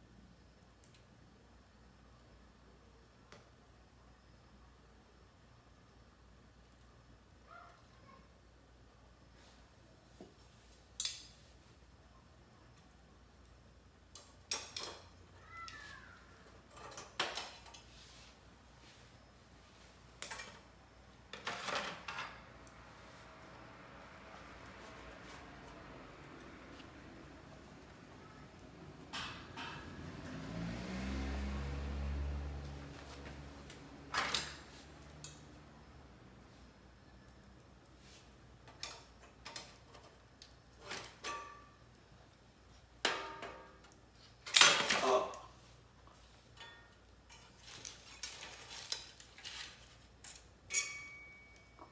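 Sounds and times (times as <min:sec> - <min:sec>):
metal clanks: 0:29.1 - 0:30.2, 0:50.7 - 0:51.6
metal utensils clattering: 0:29.2 - 0:30.2, 0:46.6 - 0:51.6.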